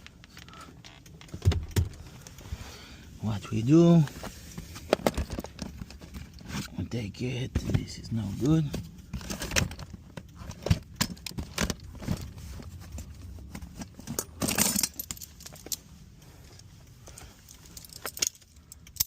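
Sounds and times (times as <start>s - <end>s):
fuses clicking and jingling: 16.7s - 19.0s.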